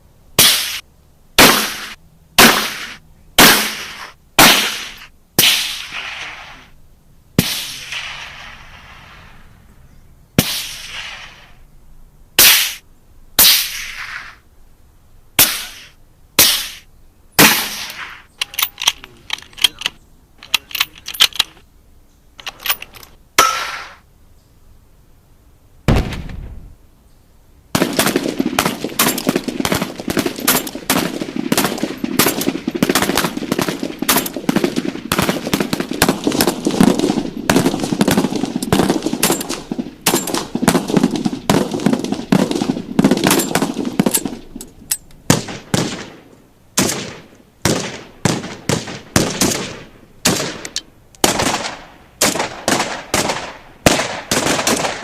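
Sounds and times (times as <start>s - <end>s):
single gunshots: 0.4s - 0.8s, 1.4s - 6.6s, 7.4s - 9.4s, 10.4s - 11.6s, 12.4s - 12.8s, 15.4s - 18.3s, 23.4s - 24.0s, 25.9s - 26.6s, 27.7s - 44.4s, 45.3s - 55.0s
deep boom: 25.9s - 26.8s
automatic gunfire: 27.7s - 44.4s, 45.3s - 46.2s, 46.8s - 55.0s.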